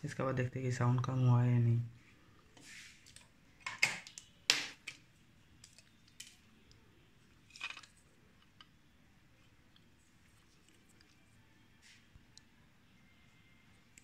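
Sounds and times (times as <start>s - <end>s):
soft rustle: 2.0s - 3.3s.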